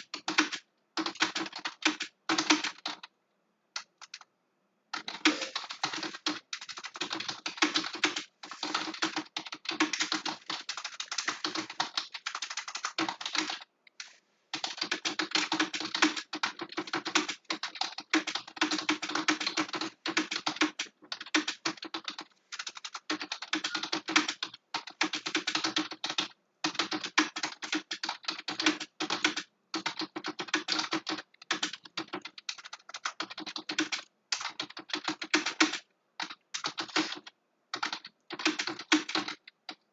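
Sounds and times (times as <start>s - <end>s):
fast typing on a keyboard: 0.0s - 3.1s, 3.8s - 4.3s, 4.9s - 39.9s.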